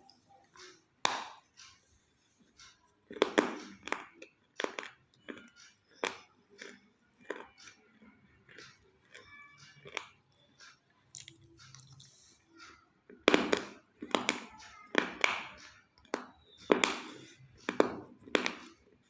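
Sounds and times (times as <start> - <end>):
person chewing crunchy clay: 3.0 - 10.2.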